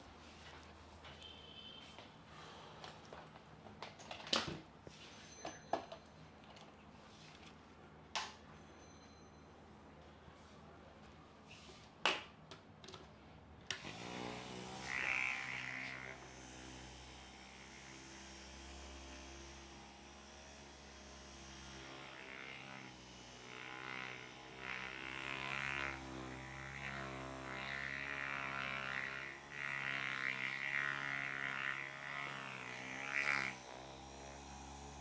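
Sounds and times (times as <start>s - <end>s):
electric massager humming: 13.8s - 35.0s.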